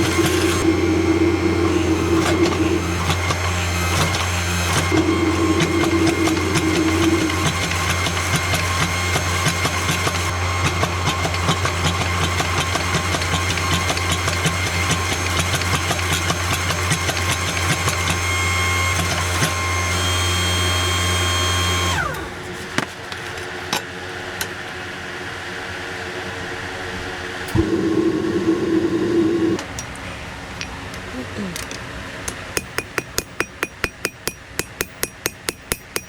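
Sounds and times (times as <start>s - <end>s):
shop machine motor humming: 0.0s - 10.6s, 27.4s - 29.8s
faint steady hum: 27.5s - 35.8s.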